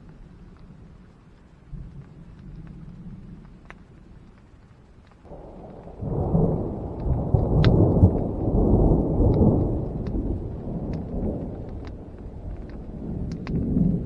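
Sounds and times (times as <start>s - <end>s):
thunder rolling: 5.3s - 14.0s.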